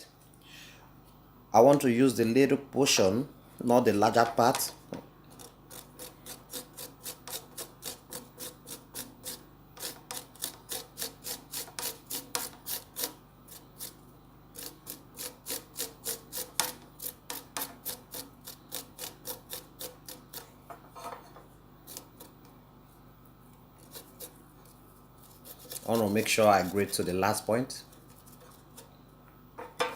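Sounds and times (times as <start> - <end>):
garlic grated on hand grater: 5.3 - 14.0, 14.6 - 20.5, 21.9 - 22.4, 23.8 - 28.9.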